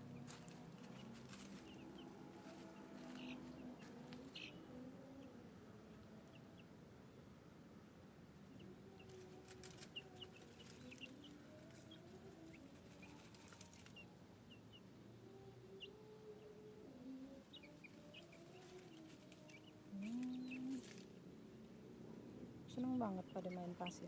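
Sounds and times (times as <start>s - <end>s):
chicks peeping: 0.1s - 6.7s, 8.4s - 21.8s, 22.7s - 24.0s
scratchy rustling: 9.1s - 14.0s.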